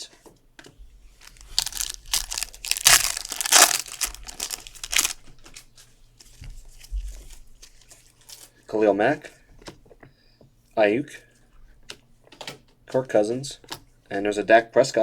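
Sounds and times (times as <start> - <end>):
card pack wrapper tearing: 1.2 - 5.2.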